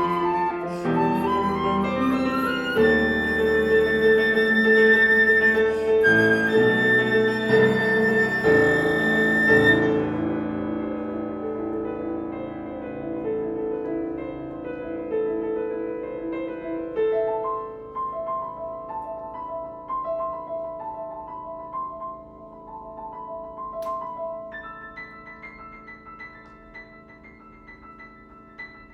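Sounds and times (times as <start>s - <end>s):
flute playing: 0.0s - 10.4s
piano playing chords: 0.0s - 28.9s.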